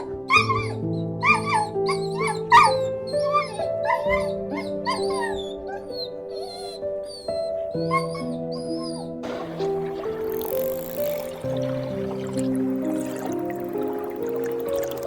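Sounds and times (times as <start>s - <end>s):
dog yipping and whimpering: 0.0s - 10.2s
soft instrumental music: 0.0s - 15.0s.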